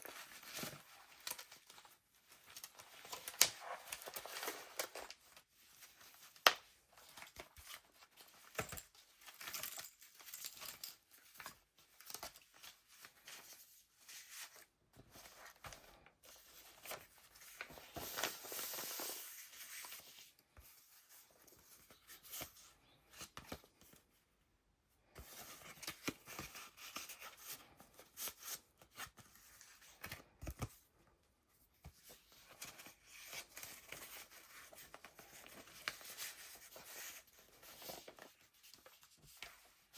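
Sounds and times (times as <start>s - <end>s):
paper pages rustling: 0.0s - 9.1s, 11.3s - 23.9s, 31.8s - 39.9s.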